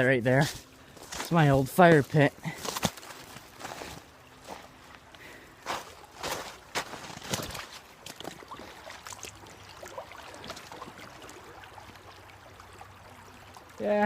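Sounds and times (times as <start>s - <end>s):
creek running faintly: 0.0s - 14.0s
footsteps crunching through brush: 0.4s - 8.4s.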